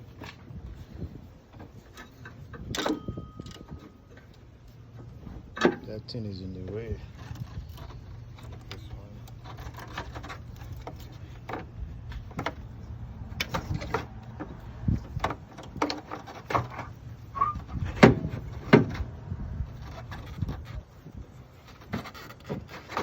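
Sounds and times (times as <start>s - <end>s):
metallic clunks and clicks: 1.6s - 4.4s.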